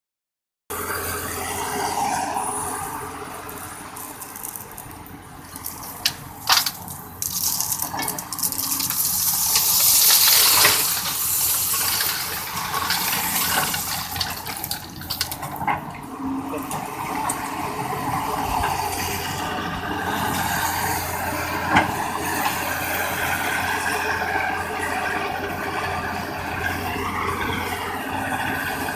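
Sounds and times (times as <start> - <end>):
excavator diesel engine running: 0.7 - 28.9
crushed stone pouring: 2.6 - 15.7
rock clacking against steel: 4.0 - 15.8.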